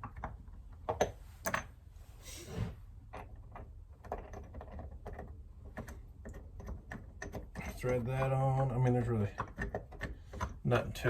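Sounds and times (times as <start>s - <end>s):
metal scraping slide: 2.2s - 2.8s.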